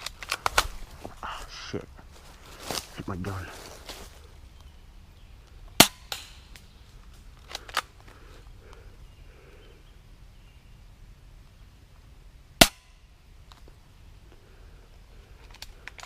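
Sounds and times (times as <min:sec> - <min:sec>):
airsoft gun shots: 0:05.8 - 0:06.4.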